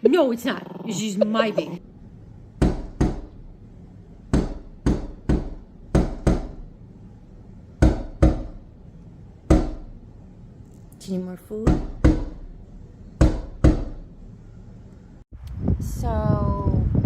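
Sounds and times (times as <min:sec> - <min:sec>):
sharp loud knocks: 0:02.6 - 0:03.4, 0:04.3 - 0:06.7, 0:07.8 - 0:08.6, 0:09.5 - 0:09.9, 0:11.6 - 0:12.5, 0:13.2 - 0:14.1.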